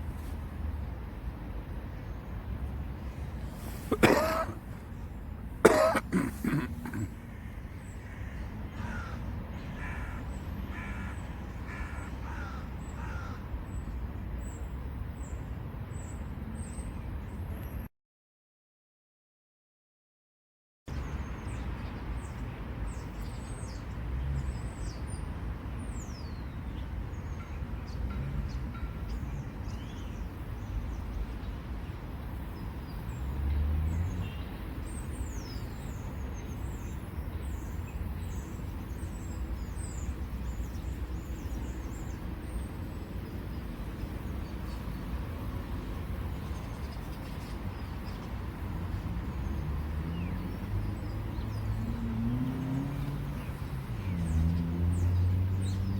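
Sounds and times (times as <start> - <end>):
distant road traffic rumble: 0.0 - 17.9, 20.9 - 55.9.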